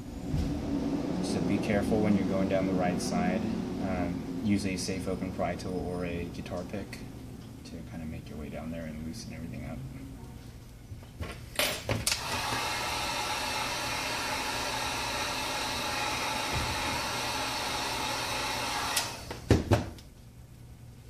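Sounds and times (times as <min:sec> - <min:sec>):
heat gun blowing: 0:12.0 - 0:19.6.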